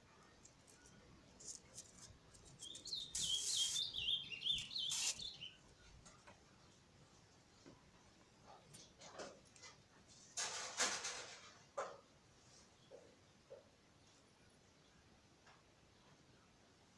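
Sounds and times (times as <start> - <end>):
small bird chirping: 0.3 - 5.9.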